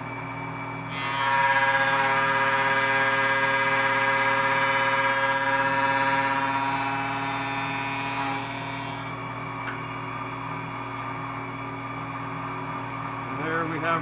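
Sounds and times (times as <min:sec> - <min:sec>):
woodworking shaper cutting wood: 0:00.9 - 0:09.2.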